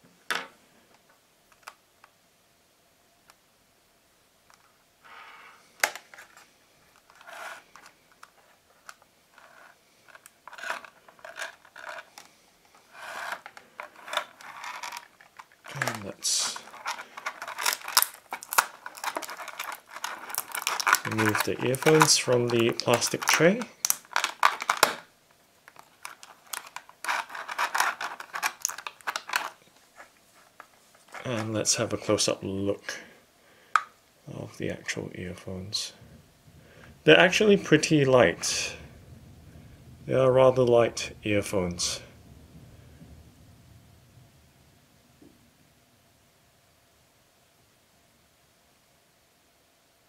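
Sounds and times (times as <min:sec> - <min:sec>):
hands handling plastic packaging: 0:05.6 - 0:32.3
plastic rubbing and scraping: 0:05.8 - 0:25.1, 0:25.7 - 0:32.0.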